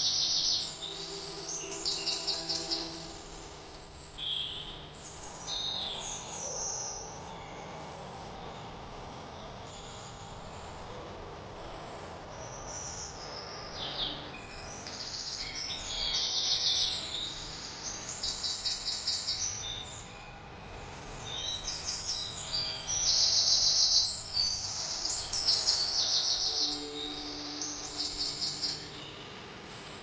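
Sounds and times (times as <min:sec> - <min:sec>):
birds singing and chirping: 0:00.0 - 0:03.4, 0:04.1 - 0:07.7, 0:12.3 - 0:20.2, 0:21.1 - 0:29.3
faint steady background noise: 0:00.0 - 0:30.0.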